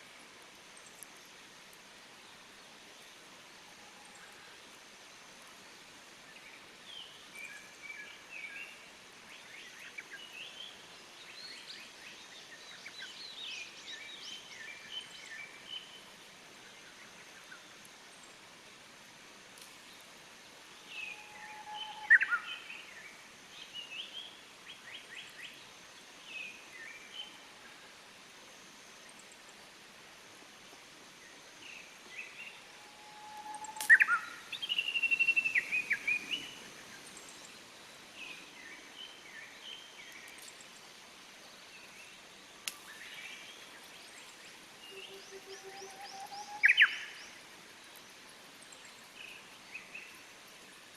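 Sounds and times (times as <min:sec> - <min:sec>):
bush warbler singing: 0:33.2 - 0:40.8, 0:41.5 - 0:50.2
small birds chirping: 0:33.6 - 0:45.4.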